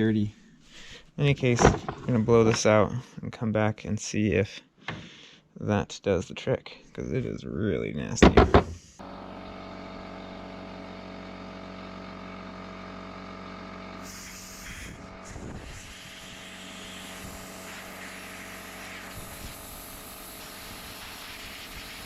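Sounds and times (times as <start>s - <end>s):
compressed air hissing: 14.0s - 22.0s
steady mechanical hum: 14.0s - 22.0s.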